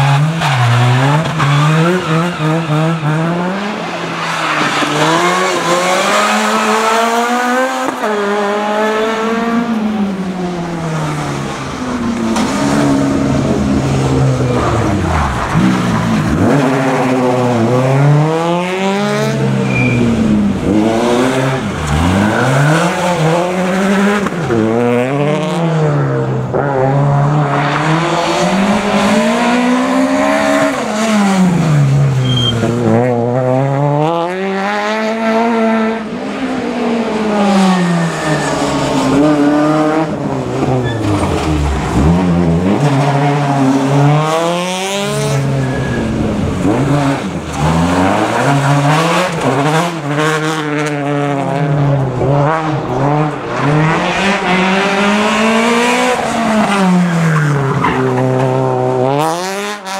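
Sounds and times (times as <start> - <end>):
rally car engines revving: 0.0 - 59.9.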